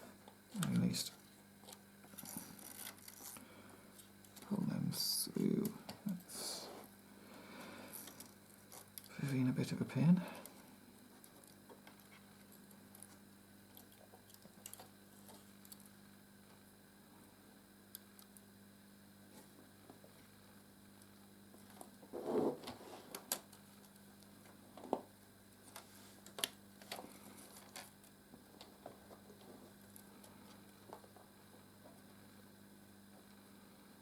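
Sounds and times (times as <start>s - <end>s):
faint steady hum: 0.0s - 34.0s
rustle of cables: 0.5s - 3.4s, 21.5s - 31.3s.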